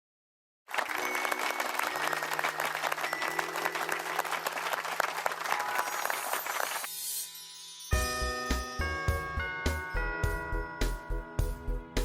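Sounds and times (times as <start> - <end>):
applause: 0.7 - 6.9
background music: 0.7 - 12.0.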